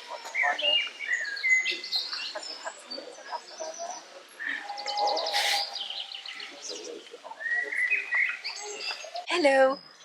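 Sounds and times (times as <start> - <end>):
birds chirping and twittering: 0.0 - 10.0
brief rush of noise: 5.3 - 5.8.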